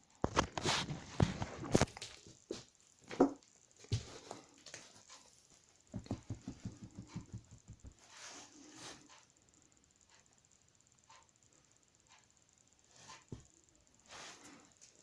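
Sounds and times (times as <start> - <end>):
soft knocks: 6.0 - 8.0.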